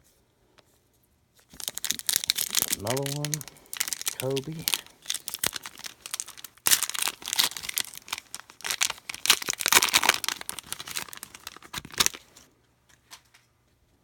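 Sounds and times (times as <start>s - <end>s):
plastic wrapper crinkling and tearing: 1.4s - 12.5s.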